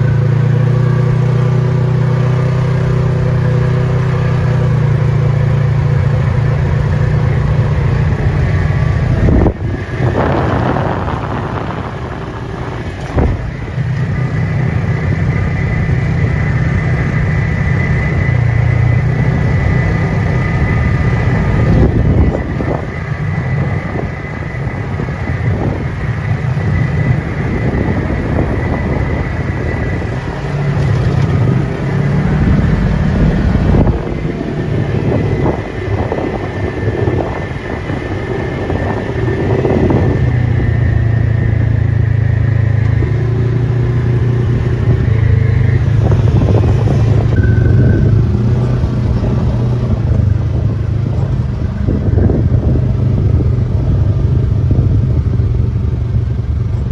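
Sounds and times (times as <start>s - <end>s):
off-road vehicle engine running: 0.0s - 56.9s.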